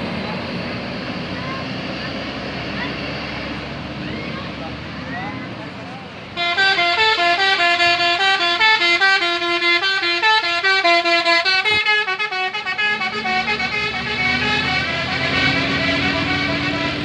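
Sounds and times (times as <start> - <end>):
bus musical horn tune: 6.4 - 17.0.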